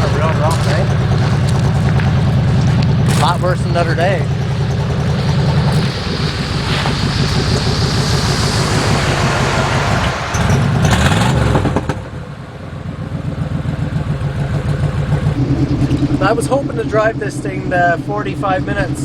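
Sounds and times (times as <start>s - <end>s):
vehicle engine running: 0.0s - 19.0s
wind and road noise: 0.0s - 19.0s.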